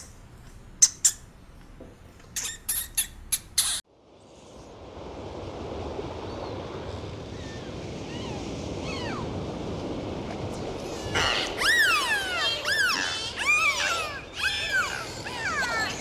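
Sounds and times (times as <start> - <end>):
steady rushing outdoor noise: 3.9 - 16.0.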